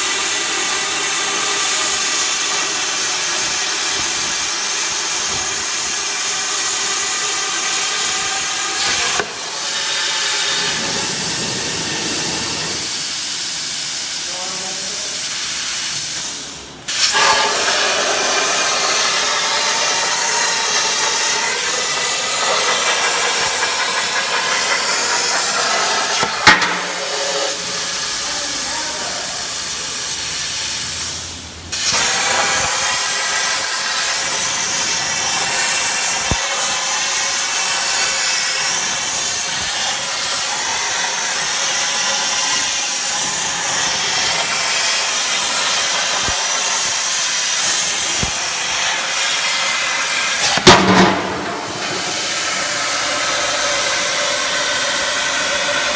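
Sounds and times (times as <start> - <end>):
plasma torch cutting steel: 0.0 - 55.9
sharp crack: 8.8 - 9.8, 18.4 - 27.6, 50.4 - 53.4.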